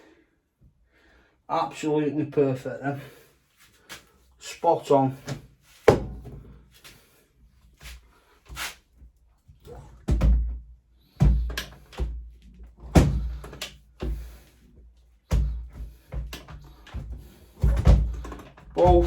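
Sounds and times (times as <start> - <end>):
heavy thumps: 11.2 - 12.2, 12.8 - 14.4, 15.3 - 19.0.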